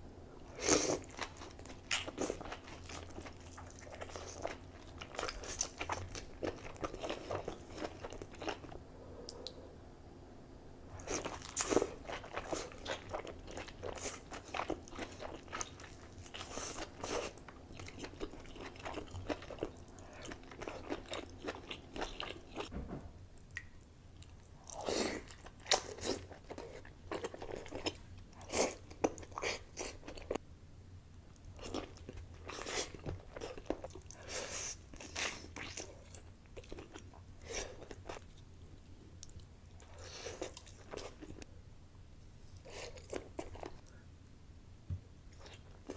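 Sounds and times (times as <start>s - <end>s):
wet chewing and crunching: 0.5s - 9.6s, 11.0s - 22.7s, 23.4s - 30.4s, 31.3s - 38.5s, 39.2s - 41.5s, 42.6s - 43.9s.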